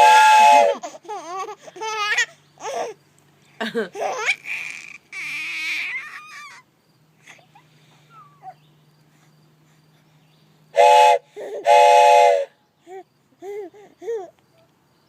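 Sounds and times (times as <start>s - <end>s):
train whistle blasts: 0.0s - 0.8s, 10.8s - 12.6s
child laughing and babbling: 0.8s - 3.0s, 3.6s - 6.6s, 7.2s - 8.6s, 12.9s - 14.4s.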